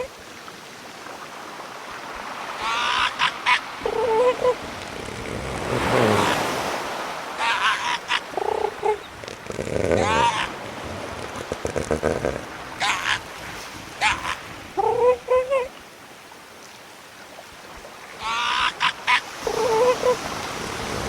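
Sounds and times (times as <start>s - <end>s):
higher many-toned animal calls: 2.6s - 4.7s, 7.4s - 9.2s, 9.8s - 10.6s, 11.6s - 13.3s, 14.0s - 15.7s, 18.2s - 20.2s
animal honking calls: 9.8s - 10.6s.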